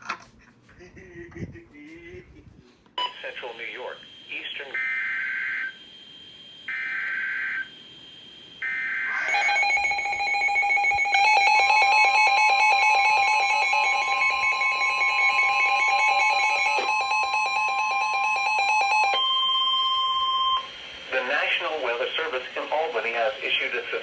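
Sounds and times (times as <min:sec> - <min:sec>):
loud steady attention tone: 0:03.0 - 0:24.0
buzzing digital header data: 0:09.2 - 0:19.5.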